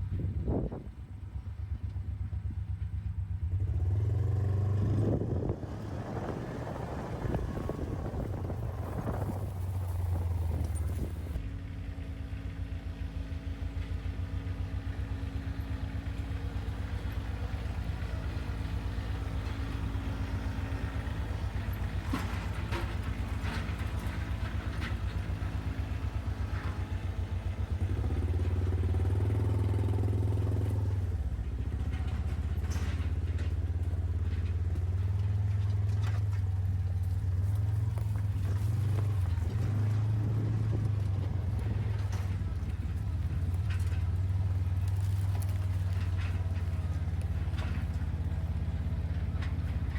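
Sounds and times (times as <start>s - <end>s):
sawmill engine running: 4.0s - 49.9s
knocks and clatter: 16.1s - 49.9s.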